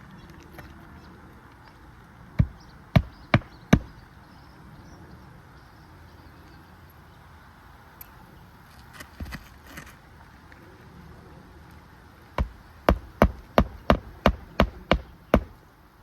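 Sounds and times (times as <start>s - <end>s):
hammer striking nail: 2.4s - 3.9s, 12.4s - 15.6s.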